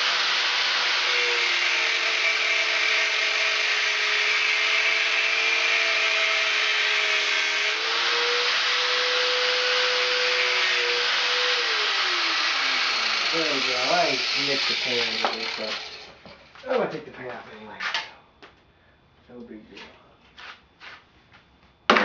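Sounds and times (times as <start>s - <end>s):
loud grinding hiss: 0.0s - 16.4s
power tool motor whine: 0.0s - 16.4s.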